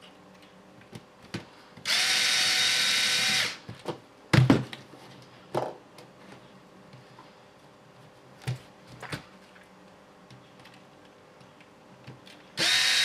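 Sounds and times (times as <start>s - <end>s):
power screwdriver running: 1.9s - 3.6s, 12.6s - 13.0s.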